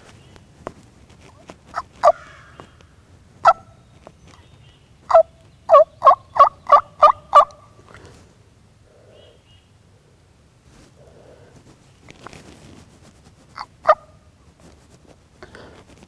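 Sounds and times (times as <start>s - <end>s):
turkey yelps: 1.7s - 2.6s, 3.4s - 3.7s, 5.1s - 7.7s, 13.6s - 14.2s.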